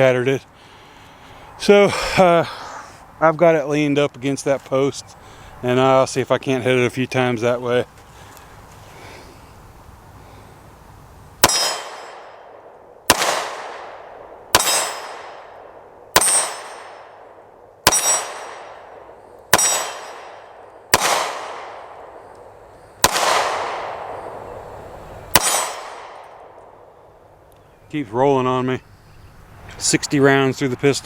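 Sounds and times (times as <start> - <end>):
pistol shots: 11.4 - 22.3, 23.0 - 24.5, 25.3 - 26.9.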